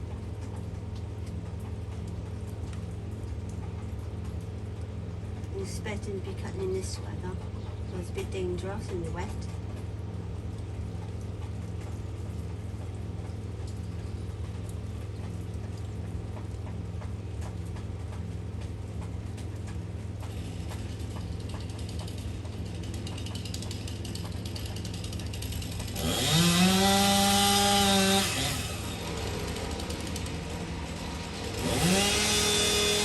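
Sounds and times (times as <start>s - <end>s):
chainsaw running and revving: 22.8s - 33.0s.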